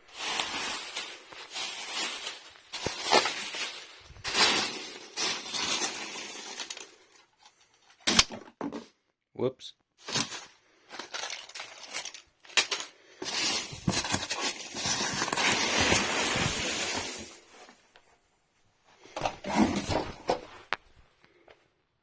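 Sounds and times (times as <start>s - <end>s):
rustling and clatter: 0.0s - 8.9s, 10.0s - 17.9s, 19.0s - 21.1s.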